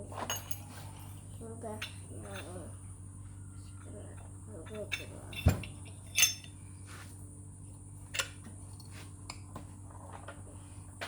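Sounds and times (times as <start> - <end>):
steady low hum: 0.0 - 11.0
metal clinks: 0.3 - 1.1, 4.6 - 6.6.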